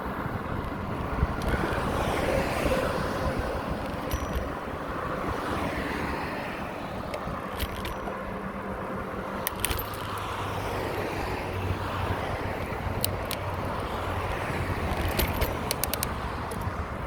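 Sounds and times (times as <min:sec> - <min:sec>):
bicycle tyres humming on path: 0:00.0 - 0:17.0
wind on microphone: 0:00.0 - 0:17.0.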